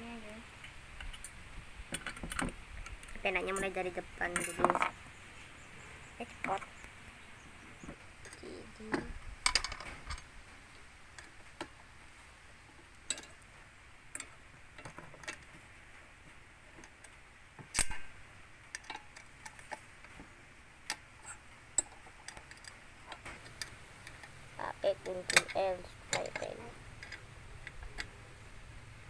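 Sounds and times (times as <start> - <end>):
light metal clicks and knocks: 0.6 - 5.0, 12.8 - 13.5, 14.1 - 15.6, 21.8 - 24.4, 25.0 - 28.2.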